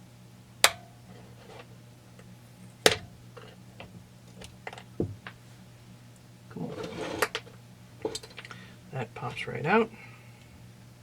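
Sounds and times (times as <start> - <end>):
dull knock: 5.0 - 5.2.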